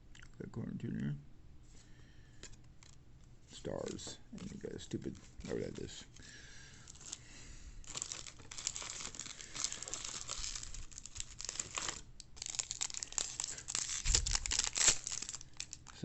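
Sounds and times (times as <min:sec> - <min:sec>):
foil wrapper tearing and crinkling: 0:03.7 - 0:06.0, 0:06.8 - 0:16.0.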